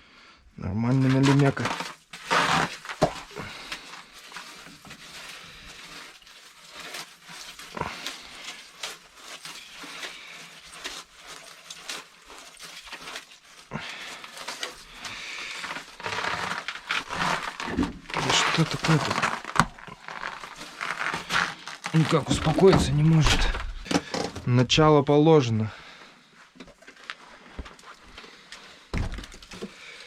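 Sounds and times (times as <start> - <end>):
fish thrashing and flopping: 1.6 - 24.4.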